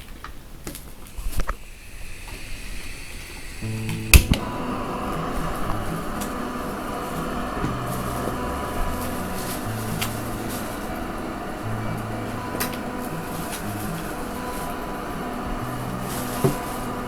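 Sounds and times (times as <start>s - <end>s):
slow low-note background music: 3.6s - 17.0s.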